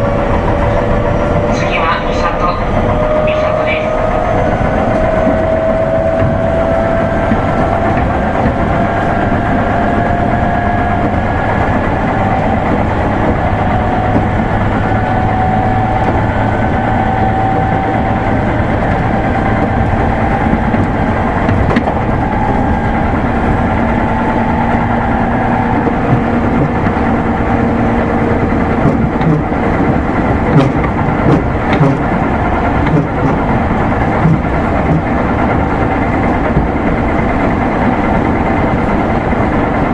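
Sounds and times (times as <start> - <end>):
electric train motor whine: 0.0 - 39.9
train wheels rumbling on rail: 0.0 - 39.9
sharp knocks: 28.8 - 32.2.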